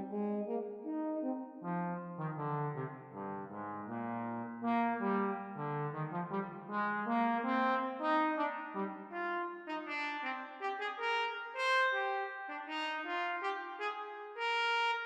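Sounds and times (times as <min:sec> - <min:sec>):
brass trio playing: 0:00.0 - 0:03.1.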